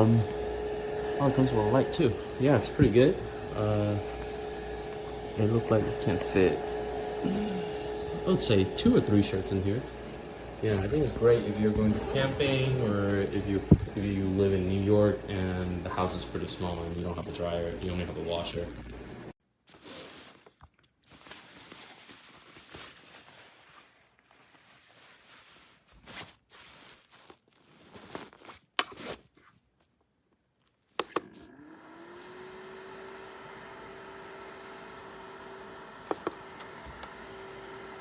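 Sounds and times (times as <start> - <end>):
dryer fan motor humming: 0.0 - 19.3, 31.5 - 38.0.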